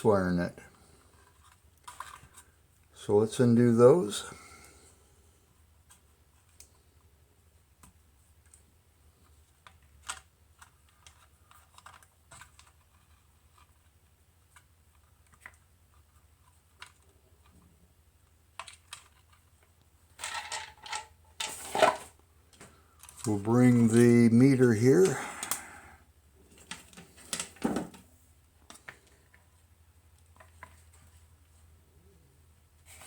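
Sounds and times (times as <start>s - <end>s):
rattling handling: 20.2s - 22.2s.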